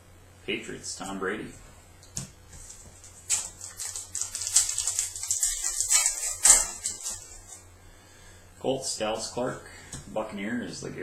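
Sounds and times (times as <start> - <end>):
trading cards clicking and rustling: 2.2 - 7.4.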